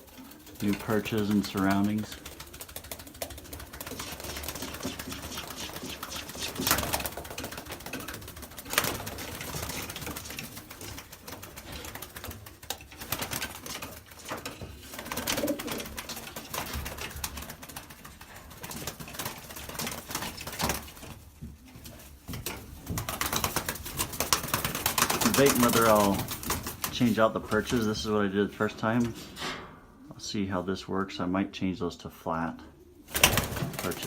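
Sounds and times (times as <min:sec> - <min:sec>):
pigeons cooing: 0:00.0 - 0:12.4, 0:14.6 - 0:16.9
pigeons shuffling: 0:00.0 - 0:29.6, 0:33.0 - 0:34.0.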